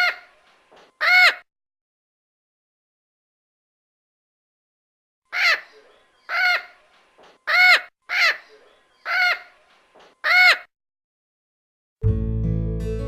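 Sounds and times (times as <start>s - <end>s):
parrot squawking: 0.0s - 0.3s, 1.0s - 1.4s, 5.3s - 6.8s, 7.5s - 9.6s, 10.2s - 10.7s.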